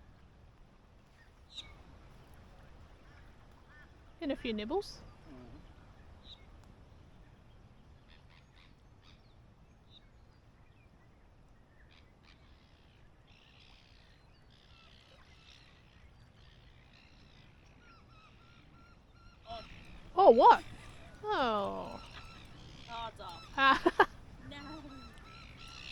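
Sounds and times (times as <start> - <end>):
bird calls chirping: 16.9 - 25.9.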